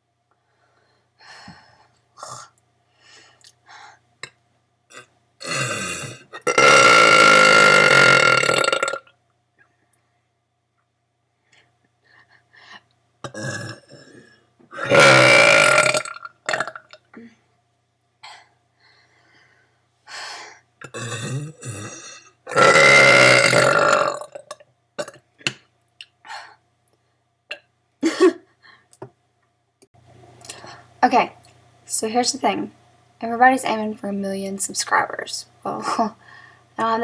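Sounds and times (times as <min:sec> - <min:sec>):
girl burping: 0:04.9 - 0:09.0, 0:13.2 - 0:17.3, 0:20.8 - 0:25.6.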